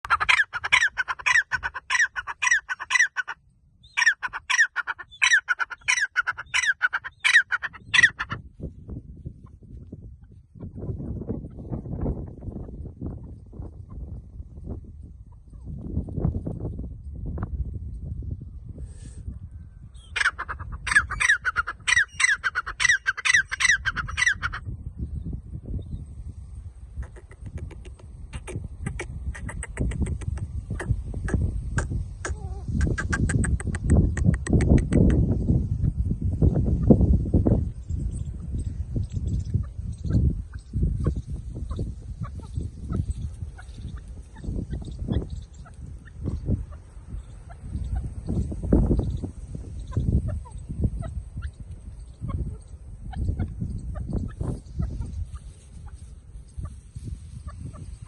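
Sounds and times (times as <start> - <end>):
francolin calling: 20.0 - 24.6.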